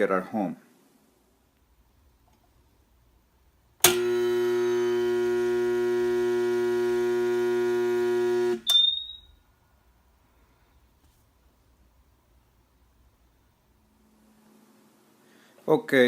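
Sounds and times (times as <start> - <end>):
electric motor buzzing: 3.8 - 8.6
circuit breaker click: 3.8 - 9.3.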